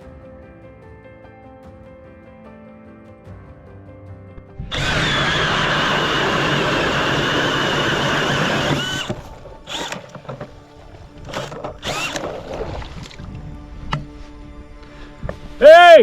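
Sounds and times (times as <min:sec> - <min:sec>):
ice auger whining: 0:04.7 - 0:13.0.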